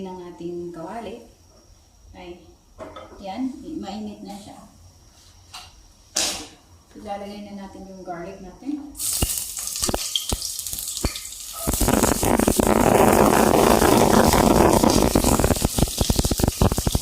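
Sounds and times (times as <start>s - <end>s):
garlic sizzling in a frying pan: 9.0s - 17.0s.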